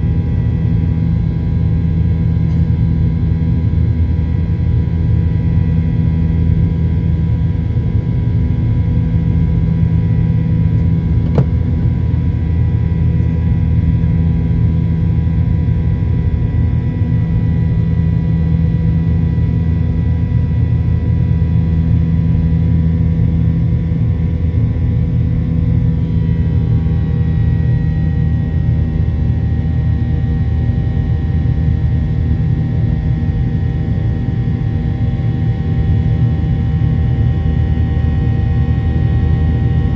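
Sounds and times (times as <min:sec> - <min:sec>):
jet engine rumble in cabin: 0:00.0 - 0:39.9
thin engine whine: 0:11.0 - 0:13.6.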